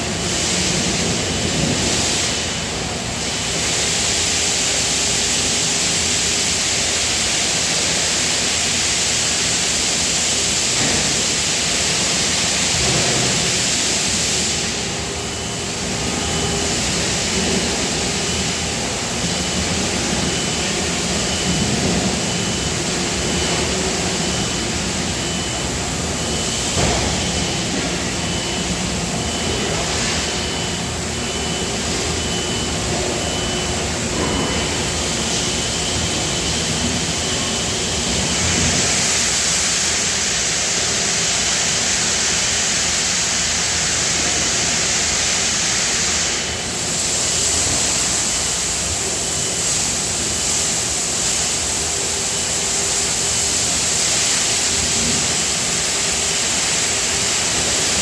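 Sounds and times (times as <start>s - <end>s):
factory machinery hiss: 0.0s - 58.0s
machine running hum: 10.7s - 40.7s.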